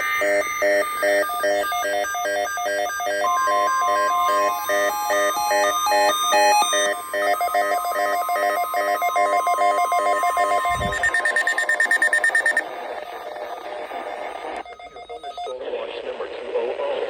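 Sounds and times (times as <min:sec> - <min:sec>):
electronic alert beeping: 0:08.2 - 0:13.6
steady electronic tone: 0:10.0 - 0:13.6.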